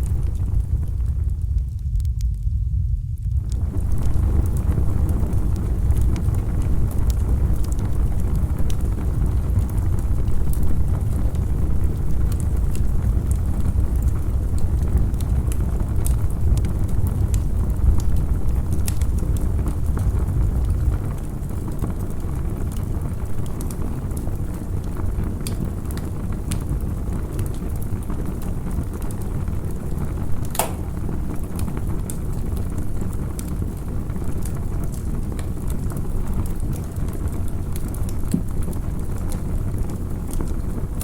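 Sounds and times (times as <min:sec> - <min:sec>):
low rumble: 0:00.0 - 0:16.5
campfire crackling: 0:00.0 - 0:41.0.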